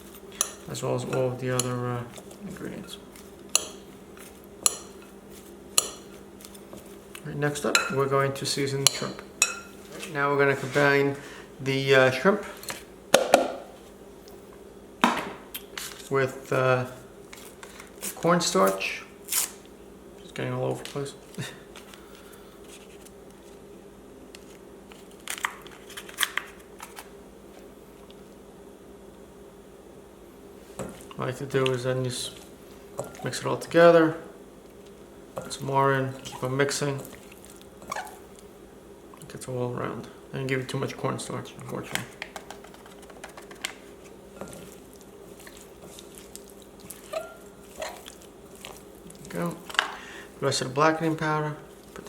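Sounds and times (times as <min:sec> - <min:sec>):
low steady hum: 0:00.0 - 0:52.0
packet crinkling: 0:24.4 - 0:27.1, 0:42.0 - 0:49.9.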